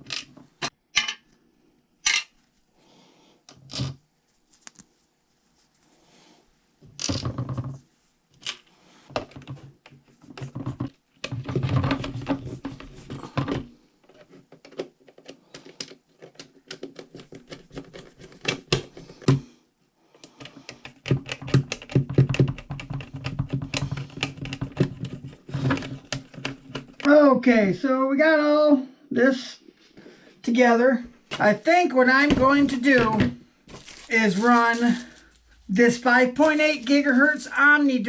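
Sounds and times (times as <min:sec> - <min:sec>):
clicks and taps on plastic controller: 0:20.2 - 0:25.2.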